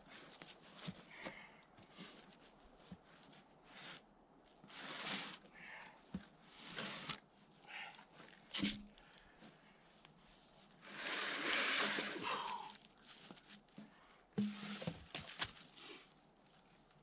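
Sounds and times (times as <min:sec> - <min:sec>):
rustling and scuffing: 0:00.1 - 0:01.3, 0:08.1 - 0:17.0.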